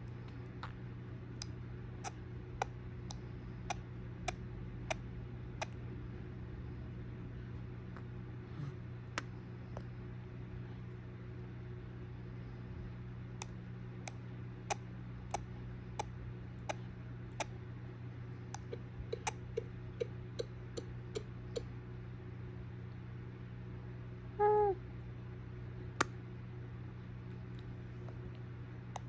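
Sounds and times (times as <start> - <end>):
steady low hum: 0.0 - 29.0
person clicking tongue: 18.6 - 21.7.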